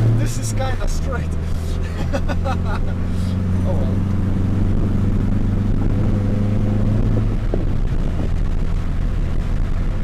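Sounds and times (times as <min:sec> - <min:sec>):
car engine drone: 0:00.0 - 0:10.0
road rumble: 0:00.0 - 0:10.0.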